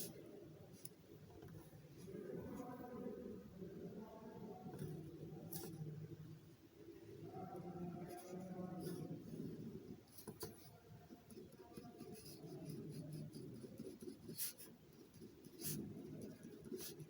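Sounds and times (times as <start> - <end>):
scratching of writing: 4.6 - 5.8, 7.4 - 17.0.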